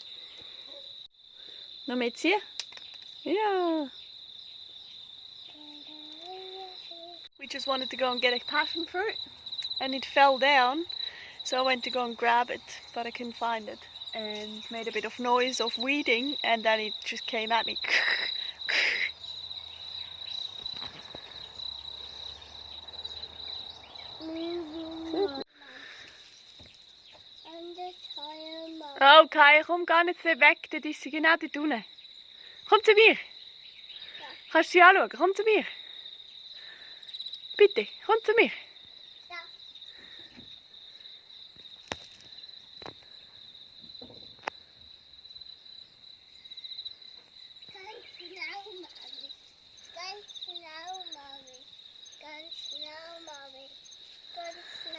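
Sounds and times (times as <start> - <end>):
insects trilling: 0.0 - 54.9
sharp clicks: 2.6 - 3.1.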